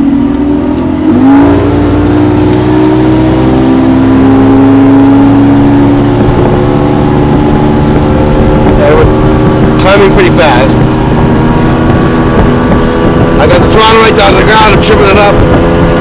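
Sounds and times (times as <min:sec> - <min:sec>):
outboard motor at full throttle: 0:00.0 - 0:16.0.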